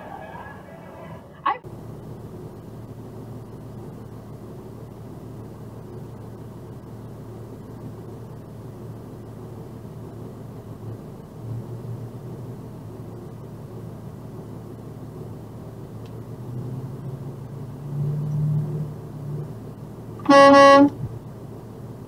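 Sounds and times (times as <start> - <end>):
truck engine running: 0.0 - 22.0
air horn blast: 20.2 - 21.1.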